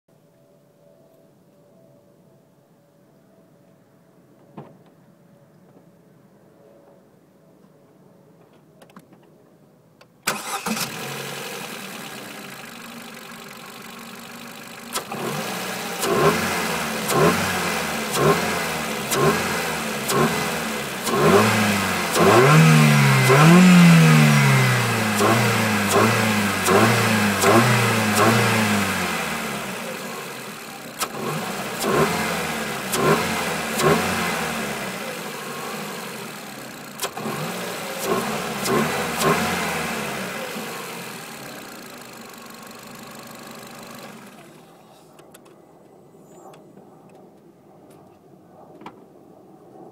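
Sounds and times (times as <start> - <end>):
car engine starting and idling: 10.2 - 45.6
engine revving: 10.3 - 44.6.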